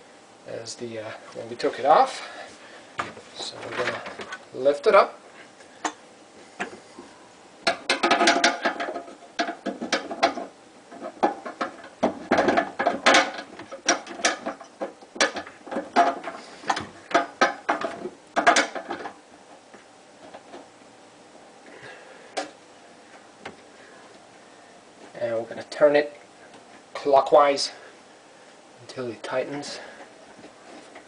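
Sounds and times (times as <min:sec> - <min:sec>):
metal clanks and rattles: 0:07.6 - 0:19.2.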